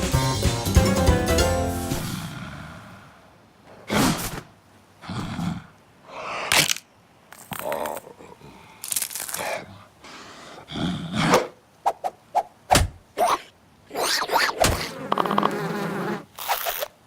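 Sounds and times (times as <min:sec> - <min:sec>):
music sting: 0:00.0 - 0:02.2.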